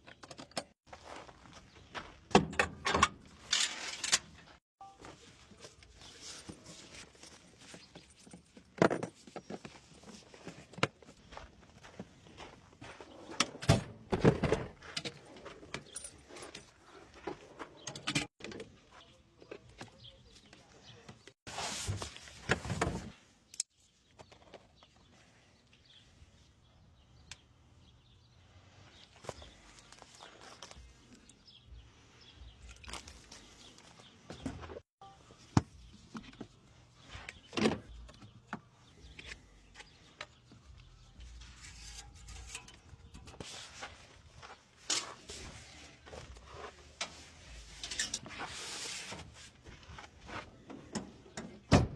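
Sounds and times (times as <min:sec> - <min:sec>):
clicks knocks and clanks of tools: 0:00.0 - 0:00.8.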